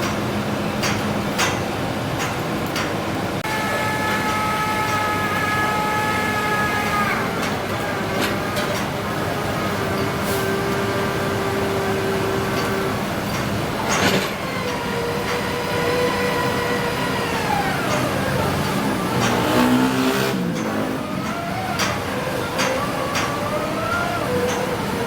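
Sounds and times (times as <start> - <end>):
piling rig engine and hydraulics: 0.0 - 25.0.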